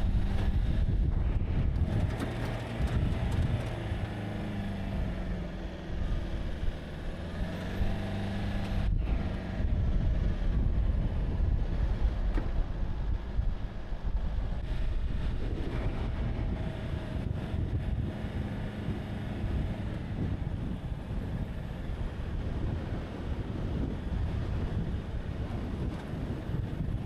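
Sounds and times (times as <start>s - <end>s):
engine revving under load: 0.0s - 13.6s, 14.2s - 27.0s
wind buffeting microphone: 0.0s - 27.0s.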